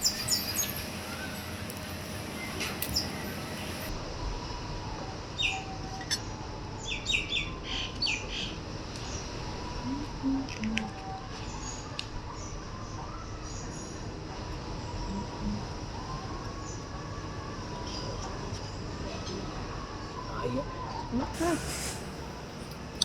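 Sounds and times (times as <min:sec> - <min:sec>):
small birds chirping: 0:00.0 - 0:03.9
steady background noise: 0:00.0 - 0:23.0.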